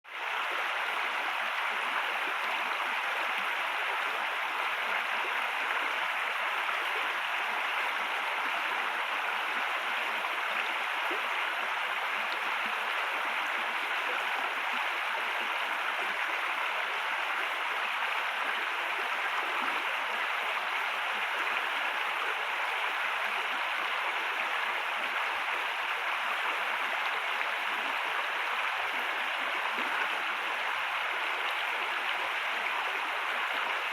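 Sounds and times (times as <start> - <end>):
river water flowing: 0.1 - 33.9.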